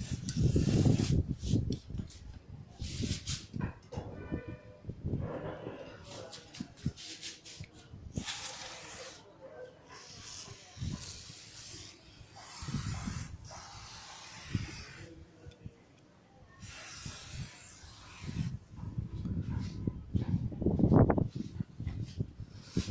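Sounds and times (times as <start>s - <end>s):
aerosol spray hissing: 0.4s - 1.2s, 8.2s - 9.2s, 10.0s - 15.1s, 16.6s - 18.5s.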